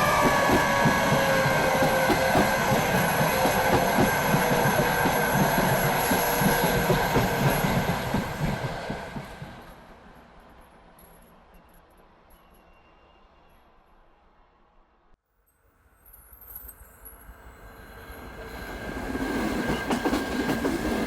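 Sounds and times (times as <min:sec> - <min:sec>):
train wheels knocking on rail joints: 0:00.0 - 0:09.6.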